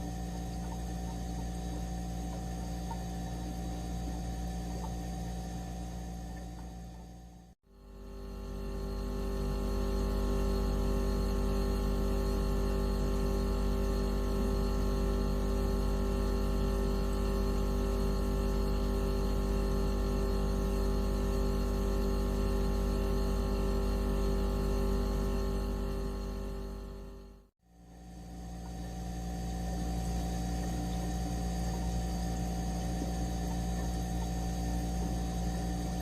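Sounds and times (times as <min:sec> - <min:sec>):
electronic drone of fixed tones: 0:00.0 - 0:27.5.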